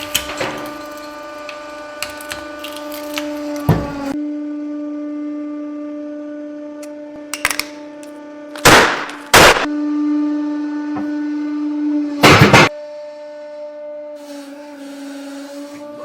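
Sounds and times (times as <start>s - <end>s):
object cracking under press: 0.0s - 3.4s
hydraulic press motor humming: 0.0s - 4.2s, 4.9s - 16.0s.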